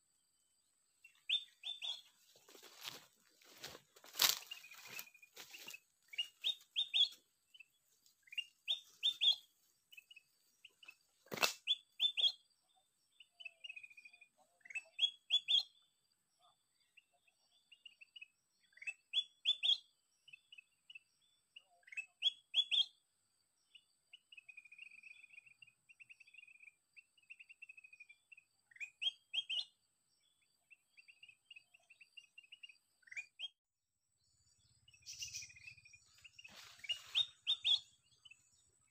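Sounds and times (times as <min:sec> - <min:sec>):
bird trill: 0:01.0 - 0:02.2, 0:04.2 - 0:12.5, 0:13.2 - 0:15.9, 0:17.7 - 0:21.1, 0:21.8 - 0:23.0, 0:24.1 - 0:29.8, 0:34.5 - 0:38.9
bird whistling calls: 0:08.3 - 0:09.4, 0:36.8 - 0:37.9.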